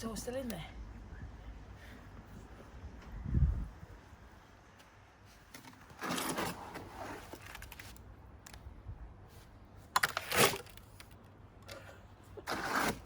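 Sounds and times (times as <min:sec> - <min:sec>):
wet cement scraped in a bucket: 0:12.4 - 0:13.0.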